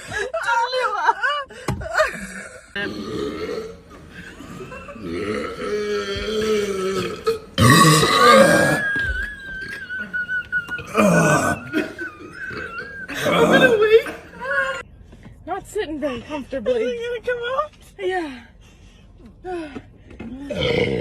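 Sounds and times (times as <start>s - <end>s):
person burping: 2.1s - 9.0s, 10.8s - 14.1s, 20.5s - 21.0s.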